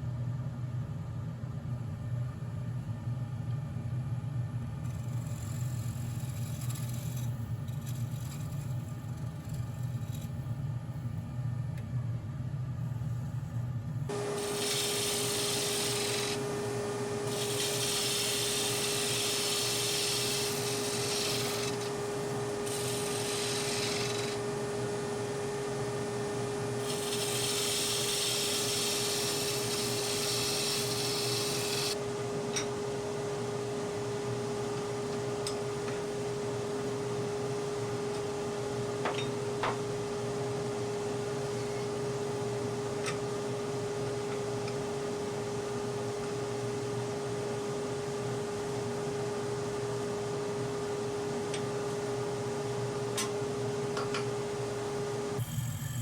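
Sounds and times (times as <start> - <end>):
tool hissing on spinning wood: 14.1 - 24.6, 26.6 - 32.0
woodturning lathe humming: 14.1 - 32.0.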